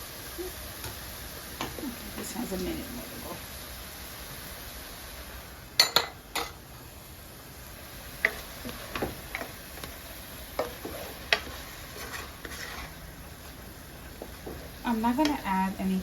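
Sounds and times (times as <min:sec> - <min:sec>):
vegetables sizzling in oil: 0:00.0 - 0:16.0
spoon knocking against pot: 0:05.8 - 0:06.6.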